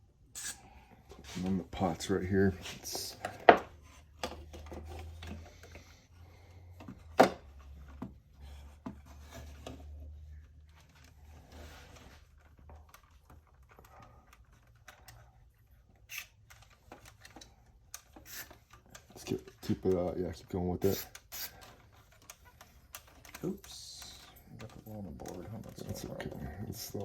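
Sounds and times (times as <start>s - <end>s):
hands handling plastic toy: 21.6s - 27.0s.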